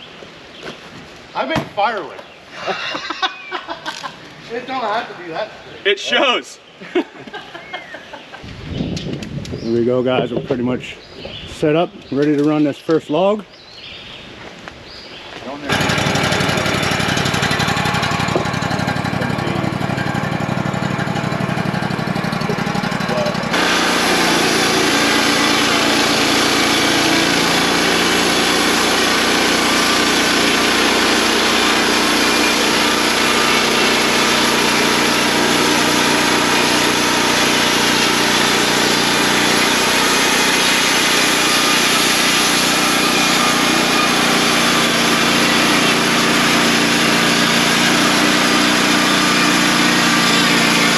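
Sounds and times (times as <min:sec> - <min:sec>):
sawmill engine droning: 0:15.6 - 0:50.9.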